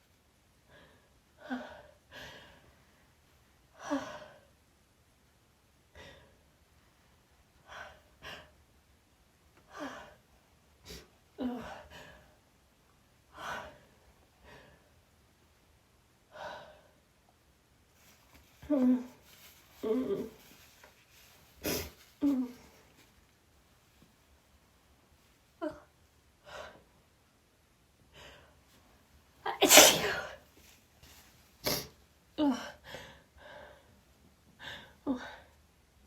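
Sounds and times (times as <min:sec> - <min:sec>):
woman sneezing: 0:29.5 - 0:30.4.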